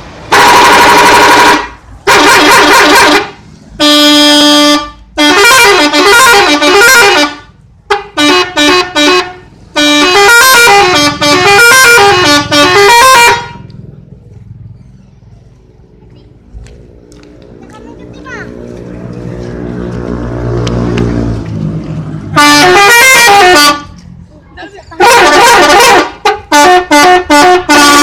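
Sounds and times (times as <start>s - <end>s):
multi-tone musical bus horn: 0.2s - 13.8s, 22.3s - 24.0s, 24.9s - 28.0s.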